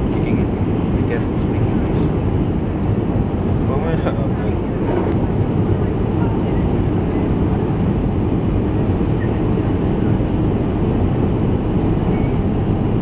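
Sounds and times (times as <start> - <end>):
airliner cabin engine rumble: 0.0 - 13.0.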